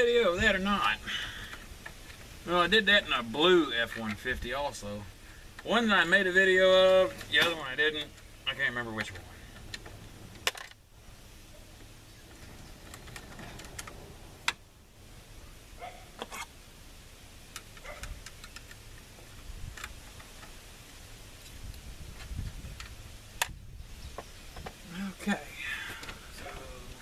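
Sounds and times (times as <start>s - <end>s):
tools and plastic parts clicking: 17.5s - 19.1s.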